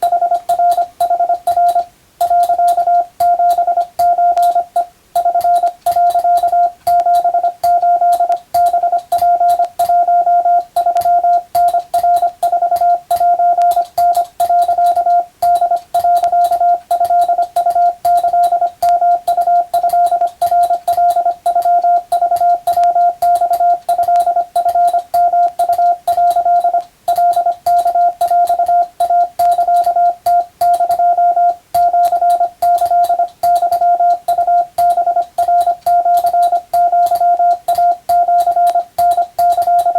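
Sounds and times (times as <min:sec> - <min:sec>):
morse code tone: 0:00.0 - 0:39.9.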